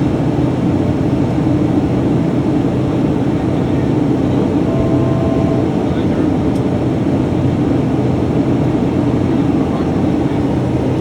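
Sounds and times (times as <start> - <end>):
turboprop engines droning in cabin: 0.0 - 11.0
short steady tone: 4.6 - 6.6.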